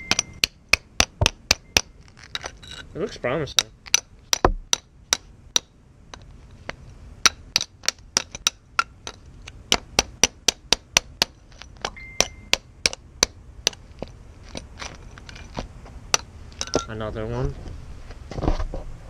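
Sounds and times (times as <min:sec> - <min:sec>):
hammer striking steel: 0:00.0 - 0:01.9, 0:07.2 - 0:13.8.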